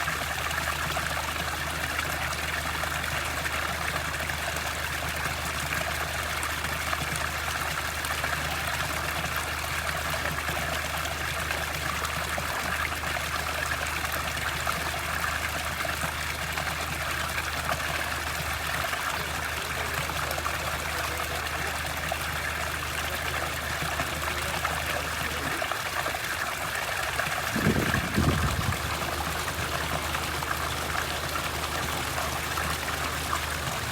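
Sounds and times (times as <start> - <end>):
water trickling: 0.0 - 33.9.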